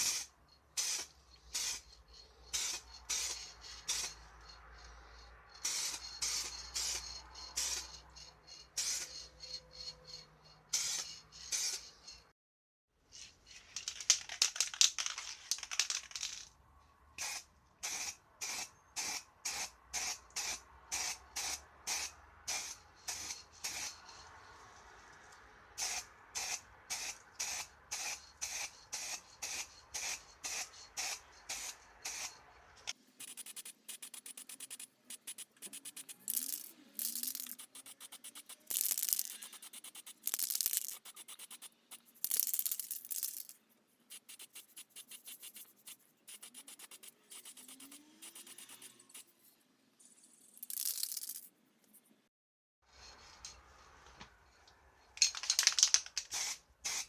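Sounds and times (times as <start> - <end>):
spray can rattling: 13.8 - 16.5, 33.0 - 49.5, 50.6 - 51.5, 55.2 - 56.6
spray can hissing: 33.0 - 49.5, 50.6 - 51.5.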